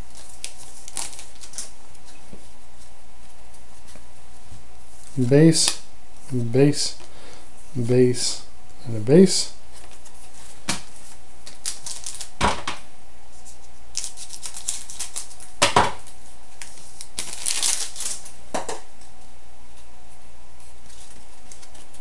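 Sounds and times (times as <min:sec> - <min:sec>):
cards shuffling: 0:00.1 - 0:02.1, 0:09.7 - 0:12.3, 0:13.4 - 0:18.3, 0:20.8 - 0:22.0
wrapper crinkling: 0:00.1 - 0:02.1, 0:11.4 - 0:12.4, 0:13.9 - 0:15.5, 0:16.6 - 0:18.3.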